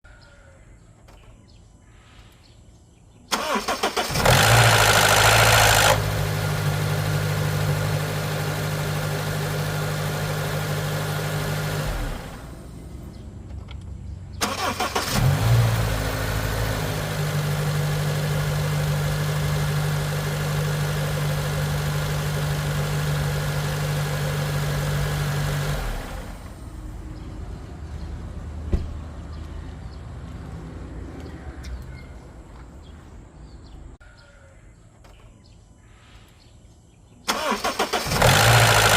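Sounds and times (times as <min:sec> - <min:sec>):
engine cranking and starting: 0:03.3 - 0:13.2, 0:14.3 - 0:26.7, 0:37.3 - 0:38.9
engine idling: 0:03.4 - 0:13.3, 0:14.3 - 0:27.3, 0:37.3 - 0:38.9
engine rattle: 0:03.4 - 0:13.7, 0:14.3 - 0:26.8, 0:37.3 - 0:38.9.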